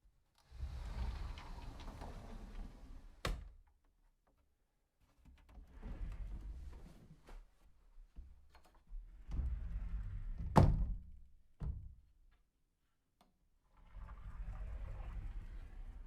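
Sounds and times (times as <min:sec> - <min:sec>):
sliding door rolling on track: 0:00.5 - 0:03.2, 0:13.8 - 0:16.0.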